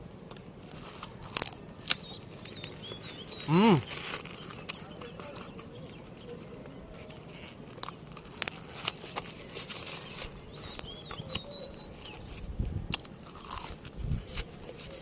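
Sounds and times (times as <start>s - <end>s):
crunching and chewing snack: 0.2s - 15.0s
bird chirps: 1.8s - 6.4s, 9.8s - 12.4s.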